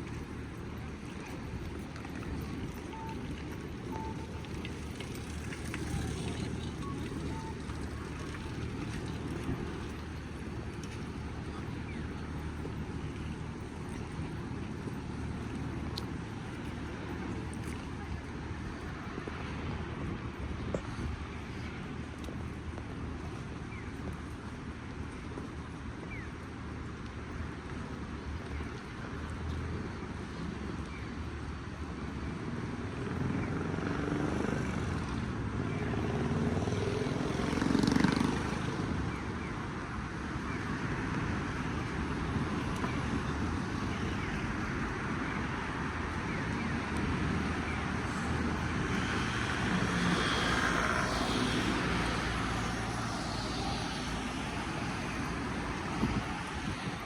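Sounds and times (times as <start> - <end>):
road traffic rumble: 0.0 - 57.0
vehicle passing: 45.5 - 57.0.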